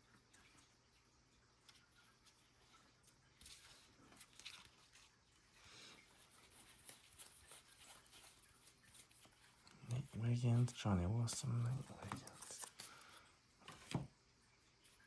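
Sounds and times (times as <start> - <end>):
trading cards rustling and clicking: 1.7 - 5.4, 6.0 - 14.1.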